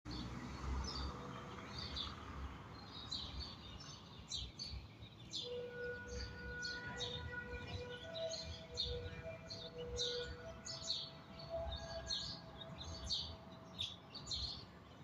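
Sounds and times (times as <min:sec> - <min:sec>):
small birds chirping: 0:00.1 - 0:15.0.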